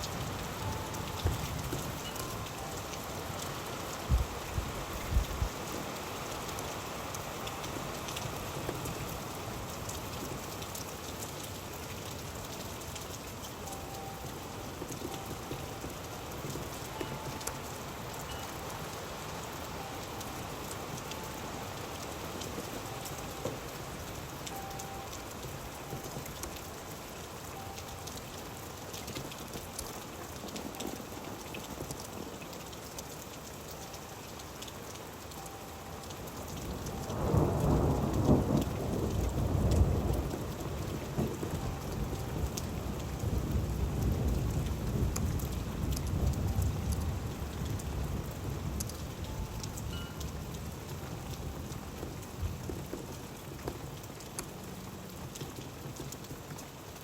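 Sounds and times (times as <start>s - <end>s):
rain drops ticking: 0.0s - 57.0s
low thunder rumble: 36.6s - 52.8s.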